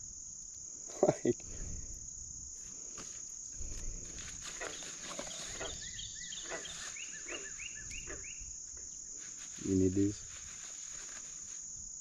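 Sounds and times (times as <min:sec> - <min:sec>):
insects chirring: 0:00.0 - 0:12.0
faint rustles and knocks: 0:09.2 - 0:11.7.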